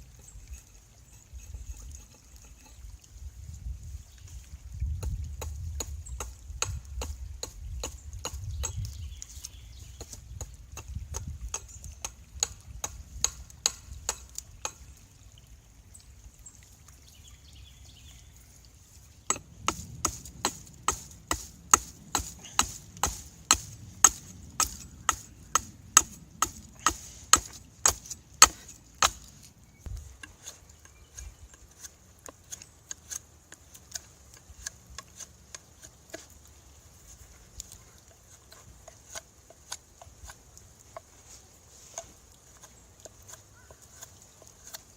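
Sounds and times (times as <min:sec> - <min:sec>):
hand tool chopping wood: 0:19.3 - 0:29.4.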